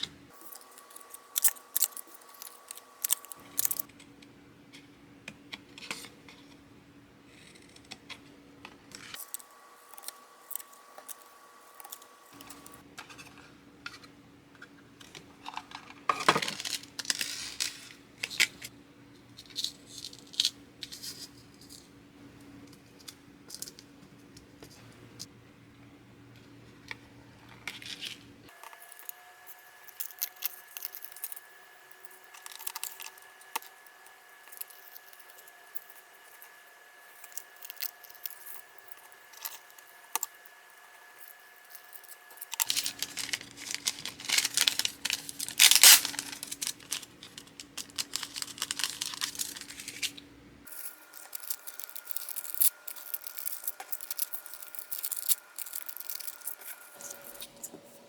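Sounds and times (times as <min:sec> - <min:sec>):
packaging rustling and crinkling: 0:41.2 - 0:57.5.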